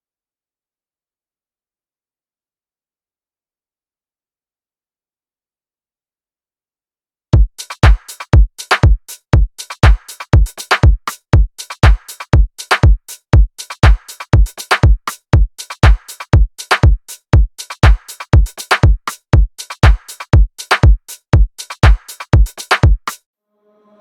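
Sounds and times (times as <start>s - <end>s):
loud kick drum: 7.4s - 23.2s
electronic dance music: 7.6s - 23.2s.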